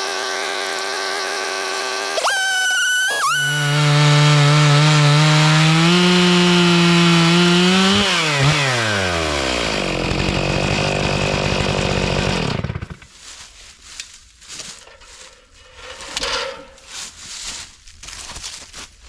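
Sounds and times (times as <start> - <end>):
chainsaw running: 0.0 - 13.1.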